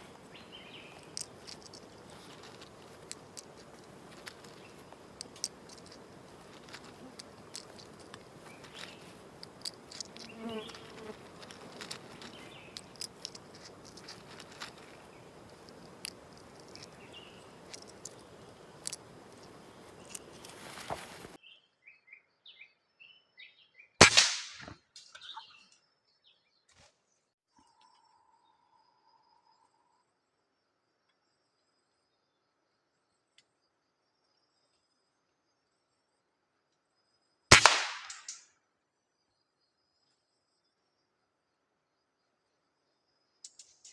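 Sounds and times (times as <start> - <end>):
insects: 0.0 - 21.4, 25.1 - 43.9
bird chirps: 0.0 - 24.0, 25.1 - 26.5
air rifle shot: 24.0 - 24.8, 37.5 - 38.2.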